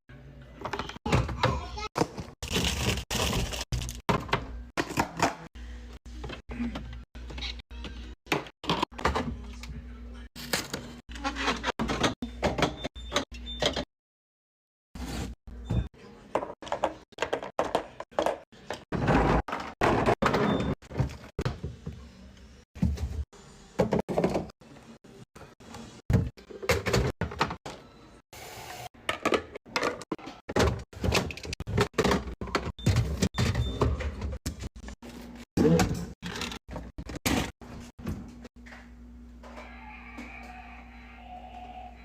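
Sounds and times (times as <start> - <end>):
containers thunking and clunking: 16.3 - 21.9, 23.8 - 24.5, 29.0 - 34.6.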